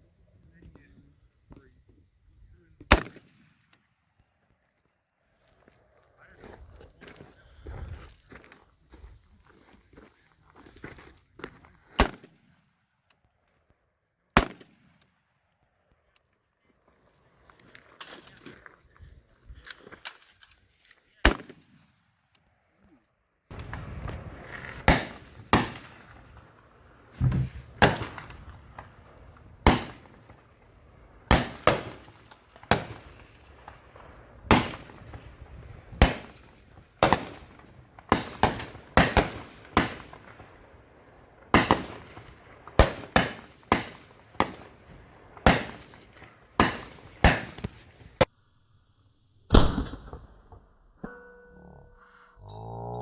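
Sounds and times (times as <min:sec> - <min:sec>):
rifle shots with echo: 0:02.9 - 0:03.7, 0:12.0 - 0:12.7, 0:14.4 - 0:15.1, 0:21.2 - 0:22.0, 0:23.5 - 0:48.3
high ringing tone: 0:51.0 - 0:52.2.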